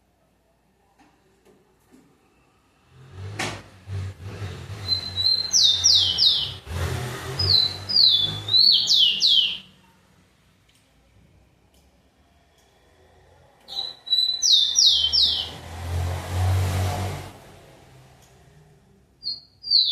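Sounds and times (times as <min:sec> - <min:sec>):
sparrow singing: 0:04.8 - 0:09.8, 0:13.7 - 0:15.6, 0:19.2 - 0:19.9.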